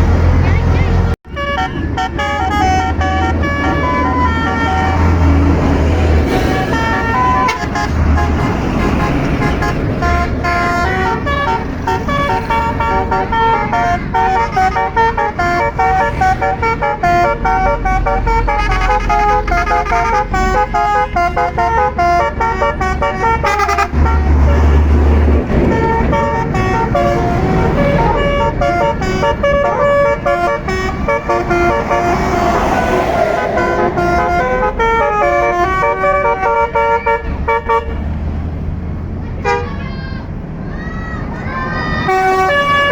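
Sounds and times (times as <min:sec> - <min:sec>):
bus horn playing a tune: 0:01.3 - 0:38.2, 0:39.4 - 0:39.8, 0:42.0 - 0:42.9
low rumble: 0:31.3 - 0:35.0.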